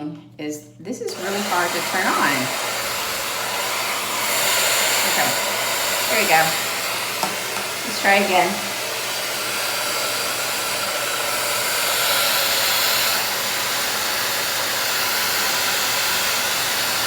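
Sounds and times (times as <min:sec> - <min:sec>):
hair dryer blowing: 0:01.0 - 0:17.0.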